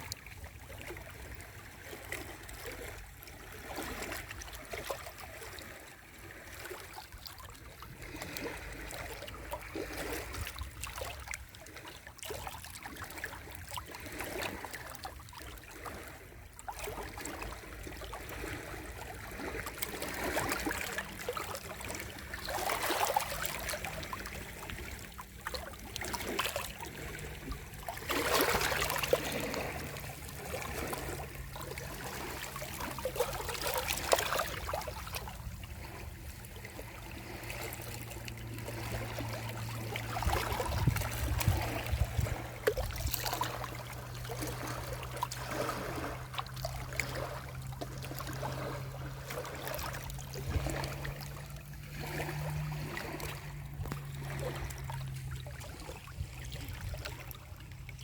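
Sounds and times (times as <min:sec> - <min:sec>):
sea waves washing onto shore: 0:18.3 - 0:55.9.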